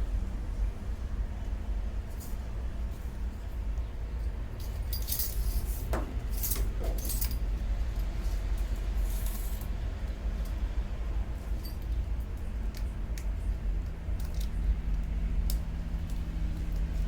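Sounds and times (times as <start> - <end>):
steady low hum: 0.0 - 17.0
metal hardware clinking: 4.6 - 7.4.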